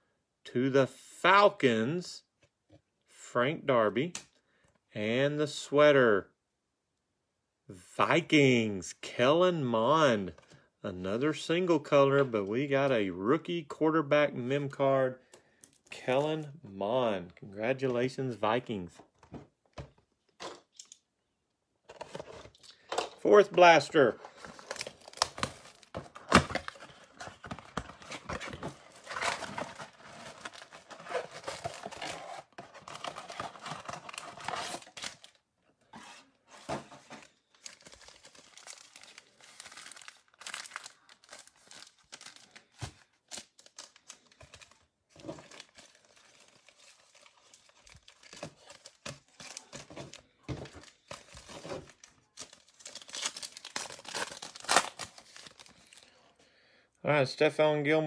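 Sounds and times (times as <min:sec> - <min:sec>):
plastic wrapping crinkling and tearing: 0:24.3 - 0:35.4, 0:37.5 - 0:56.1.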